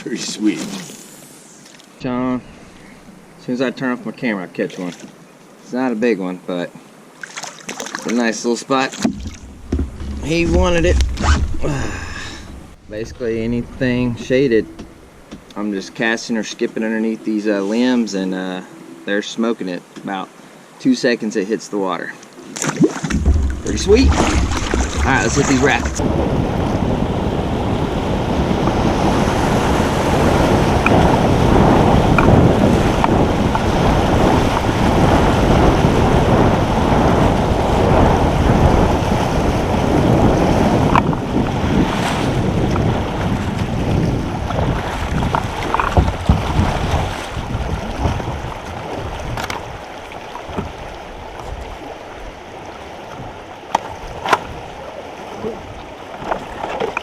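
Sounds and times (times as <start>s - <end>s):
sharp knocks: 8.9s - 12.8s, 22.6s - 26.0s
wind buffeting microphone: 9.0s - 15.6s, 23.0s - 56.4s
creek rapids rushing: 9.1s - 15.2s, 22.8s - 27.0s.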